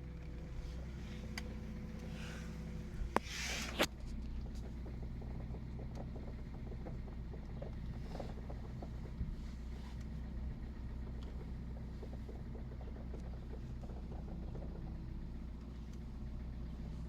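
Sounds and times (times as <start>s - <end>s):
car engine idling: 0.0s - 17.0s
faint irregular clicks: 0.2s - 17.0s.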